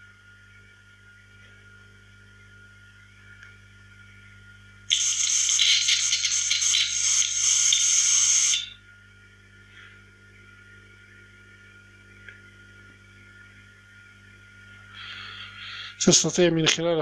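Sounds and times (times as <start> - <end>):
faint electrical hum: 0.0 - 17.0
loud hissing crackling noise: 4.9 - 8.8.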